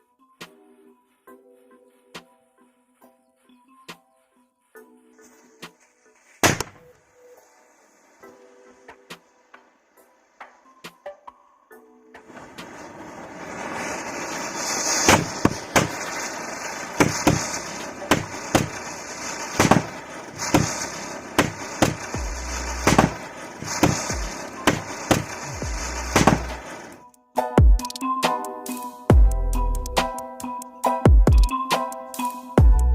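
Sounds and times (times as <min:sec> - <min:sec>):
firecrackers banging: 0:06.4 - 0:06.9, 0:12.2 - 0:27.0
hissing fizz: 0:12.3 - 0:27.0.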